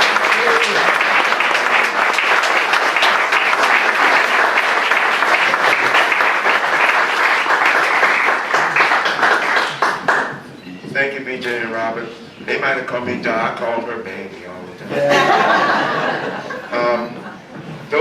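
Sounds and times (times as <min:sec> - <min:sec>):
audience applauding: 0:00.0 - 0:10.6.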